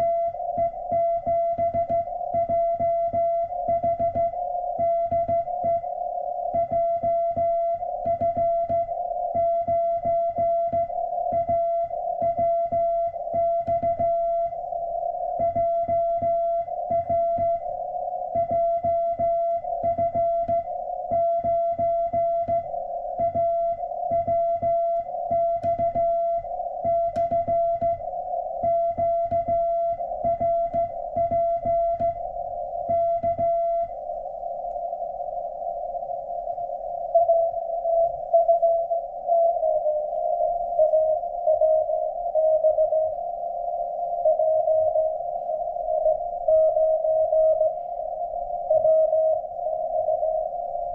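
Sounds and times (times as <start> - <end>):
morse code tone: 0.0 - 33.9, 40.8 - 43.2, 44.3 - 47.9
faint steady tone: 0.0 - 50.9.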